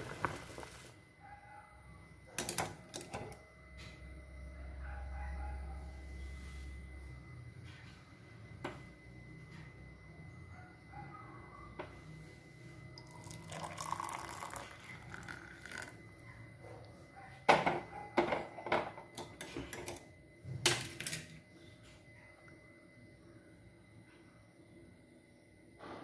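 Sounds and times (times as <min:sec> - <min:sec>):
liquid pouring: 0:13.0 - 0:16.0.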